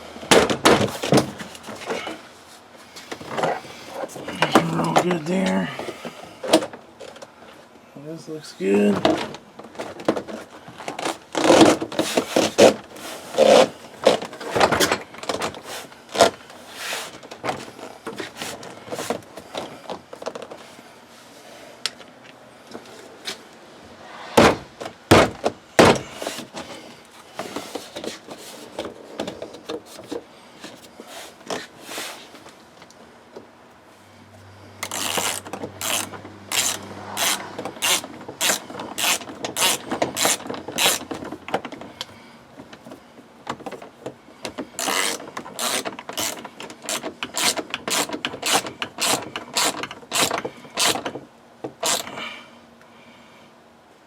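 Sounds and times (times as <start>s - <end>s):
sharp knocks: 24.3s - 26.1s
ratchet wrench clicking: 34.8s - 41.0s, 44.8s - 51.0s, 51.8s - 52.0s.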